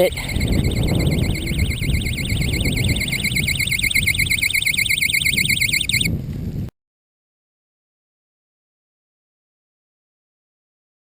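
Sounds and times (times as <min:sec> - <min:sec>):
warbling electronic alarm: 0:00.0 - 0:06.1
low rumbling noise: 0:00.0 - 0:06.7.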